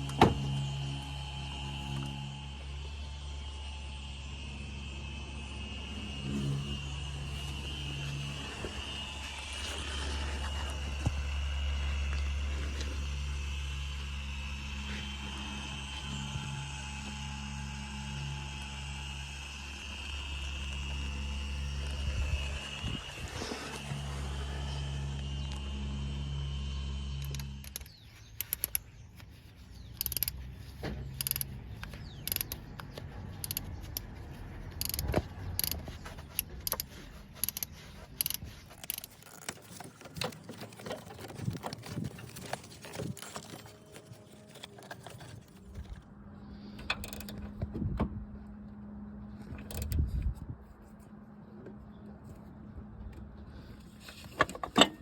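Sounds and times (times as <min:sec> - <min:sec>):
steady low hum: 0:00.0 - 0:55.0
hand tools clicking on metal: 0:27.2 - 0:28.9, 0:29.9 - 0:30.4, 0:31.2 - 0:45.6
ratchet clicking: 0:27.2 - 0:28.9, 0:29.9 - 0:40.8, 0:46.9 - 0:47.4, 0:49.6 - 0:50.0.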